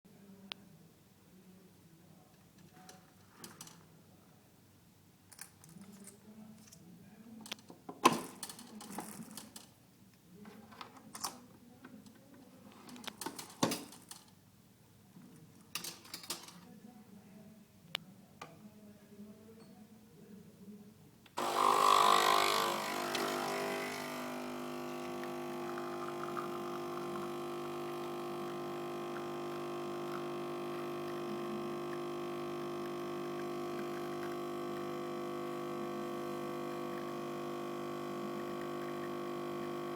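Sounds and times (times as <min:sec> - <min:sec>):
coffee machine pump buzzing: 0:21.4 - 0:39.9.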